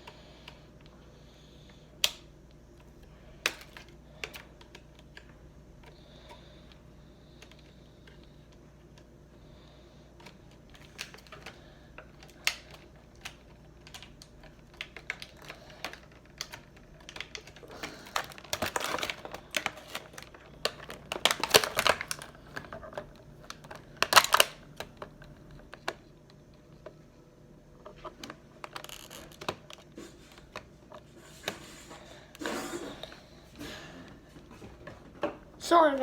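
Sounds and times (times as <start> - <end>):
plastic packaging clicks and taps: 2.0 - 9.1, 10.2 - 27.0, 27.8 - 31.6
packaging rustling scrapes: 10.2 - 24.5, 27.9 - 33.1.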